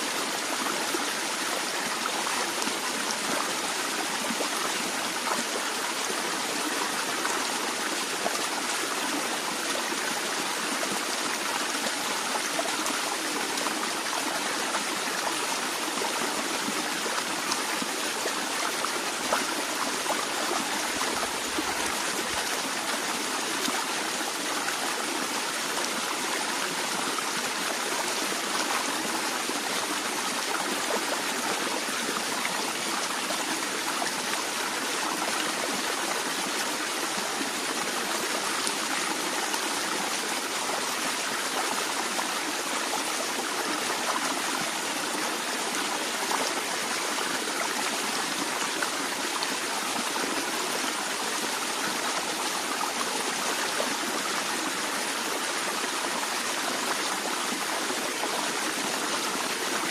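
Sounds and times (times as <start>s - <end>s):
stream flowing over stones: 0.0s - 59.9s.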